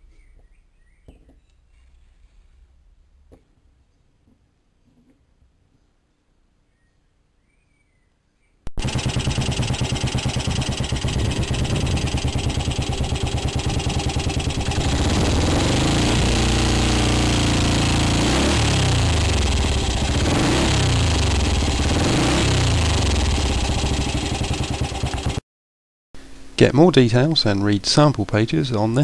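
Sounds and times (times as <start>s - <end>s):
motorcycle engine revving: 8.8s - 25.4s.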